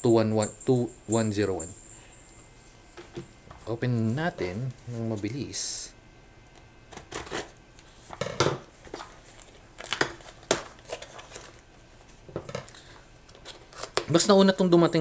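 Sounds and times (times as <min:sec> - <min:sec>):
package wrapping crinkling and tearing: 0:08.8 - 0:14.1.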